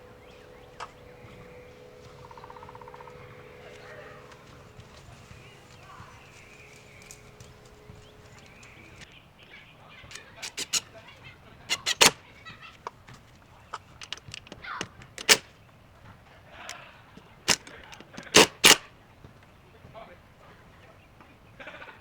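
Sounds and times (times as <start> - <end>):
metal clicks and knocks on wood: 10.1 - 10.8, 11.7 - 12.2, 14.0 - 15.5.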